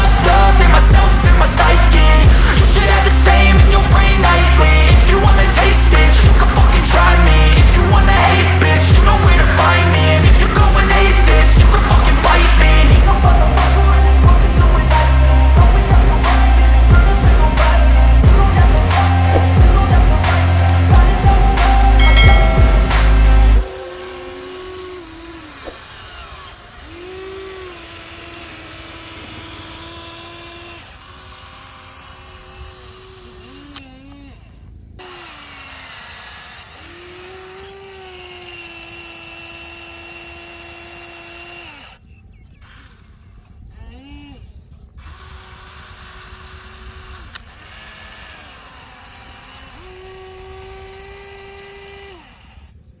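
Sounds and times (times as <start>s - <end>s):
small electric motors whining: 0.0s - 53.0s
sharp click: 20.3s - 21.0s.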